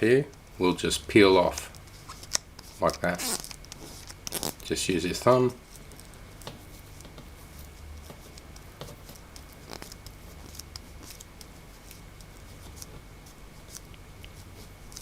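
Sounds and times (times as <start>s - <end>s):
low steady hum: 0.0s - 15.0s
thumb rubbing adhesive: 1.9s - 4.6s.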